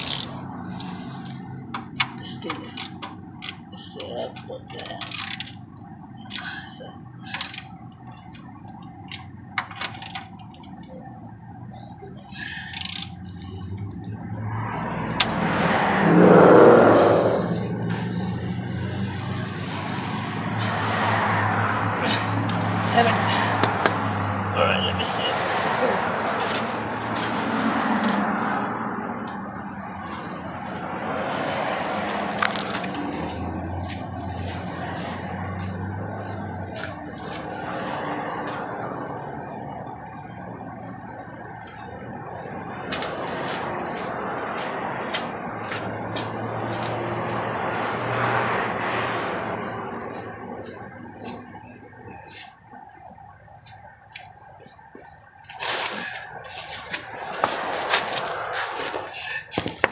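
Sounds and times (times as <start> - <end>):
wrench clicking on metal: 0.0 - 0.9, 5.0 - 5.5, 7.3 - 7.7, 12.7 - 13.2
vehicle passing: 0.0 - 59.9
low hum: 4.5 - 24.5.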